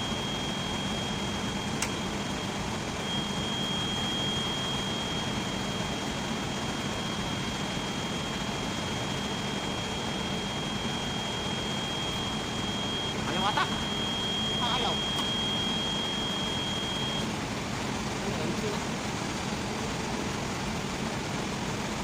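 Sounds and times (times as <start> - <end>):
high-pitched whine: 0.0 - 17.3
machinery hum: 0.0 - 22.0
sharp click: 1.8 - 2.0.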